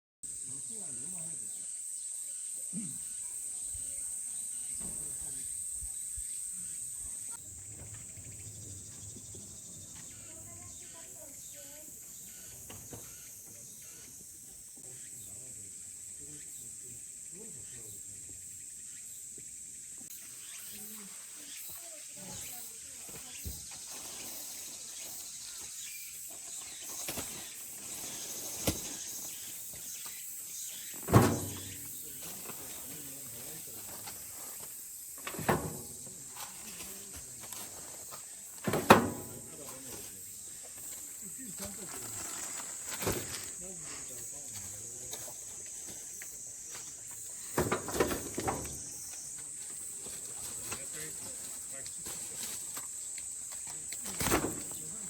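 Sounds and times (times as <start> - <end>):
high-pitched outdoor hiss: 0.2 - 55.0
insects chorus: 0.2 - 55.0
loud thump: 31.0 - 31.9, 38.6 - 39.5.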